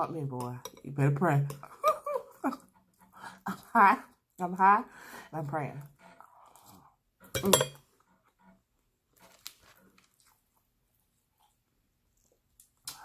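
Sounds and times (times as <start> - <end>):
cutlery and dishes clinking: 7.2 - 7.9.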